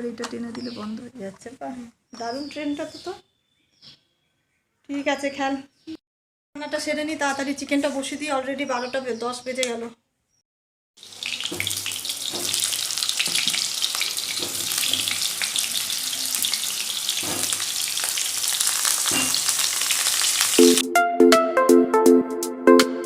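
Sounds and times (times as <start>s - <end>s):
chicken sizzling in hot oil: 11.0s - 20.8s
music with a beat: 20.6s - 23.0s.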